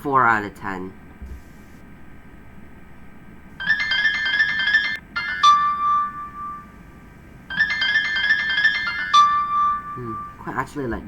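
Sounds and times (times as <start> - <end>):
phone ringtone melody: 3.6 - 10.5.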